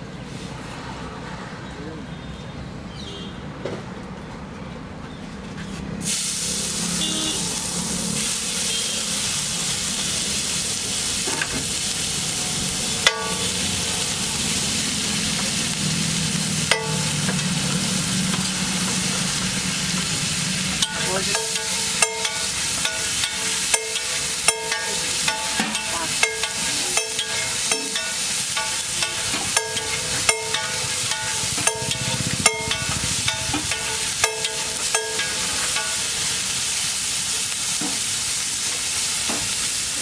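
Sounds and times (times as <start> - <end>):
food sizzling in metal pan: 6.0 - 40.0
spatula clinking on pan: 13.0 - 13.6, 16.7 - 17.6, 20.8 - 36.4.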